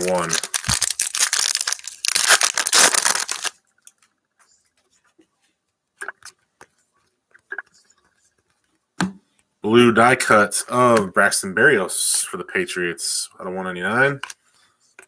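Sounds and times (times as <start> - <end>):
wrapper ripping and crinkling: 0.0 - 4.1.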